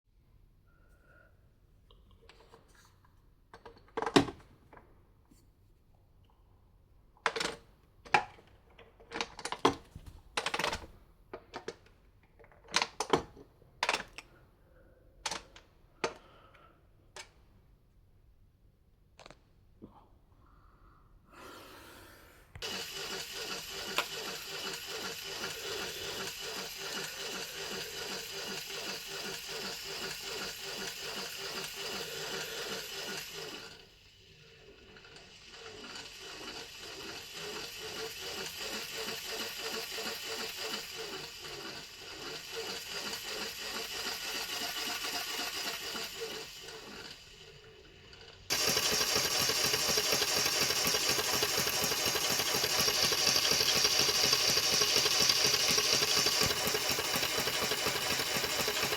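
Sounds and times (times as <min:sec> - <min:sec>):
motor whirring with clattering strokes: 0:22.6 - 0:58.9.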